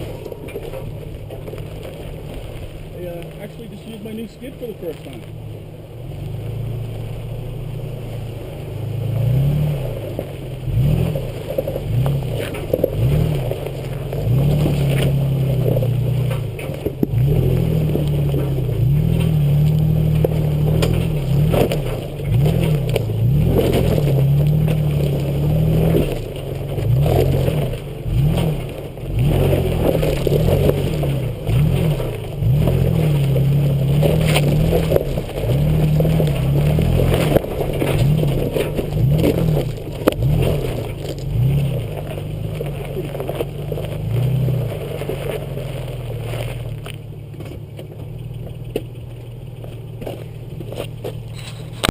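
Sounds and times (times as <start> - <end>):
off-road vehicle engine revving: 0.0 - 51.9
rock crackling under tyres: 0.0 - 51.9.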